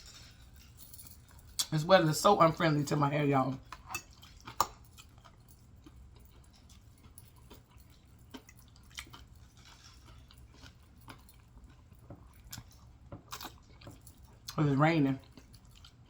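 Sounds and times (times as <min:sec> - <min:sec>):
faint low hum: 0:00.0 - 0:16.0
wet chewing and mouth clicks: 0:03.6 - 0:14.6, 0:15.2 - 0:16.0.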